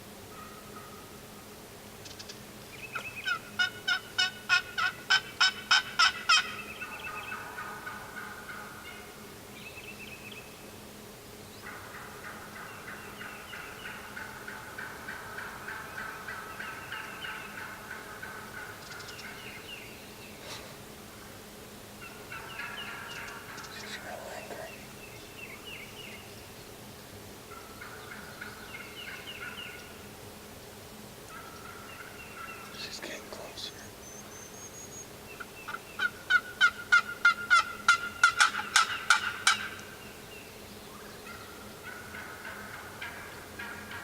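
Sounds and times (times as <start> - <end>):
turkey gobbling: 0.3 - 1.1, 2.9 - 9.2, 11.6 - 19.7, 22.0 - 24.7, 27.5 - 30.0, 31.3 - 32.8, 35.4 - 40.0, 41.2 - 44.0
turkey rattling calls: 2.1 - 9.0, 11.6 - 19.7, 22.0 - 24.7, 35.4 - 40.1, 41.2 - 44.0
turkey yelping: 3.0 - 9.0, 11.6 - 19.4, 22.0 - 24.0, 35.7 - 39.9, 41.2 - 44.0.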